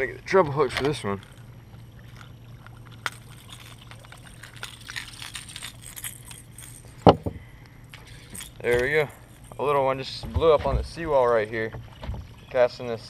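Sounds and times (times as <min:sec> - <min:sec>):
low steady hum: 0:00.0 - 0:13.0
fishing lure clicking and rattling: 0:02.2 - 0:07.1.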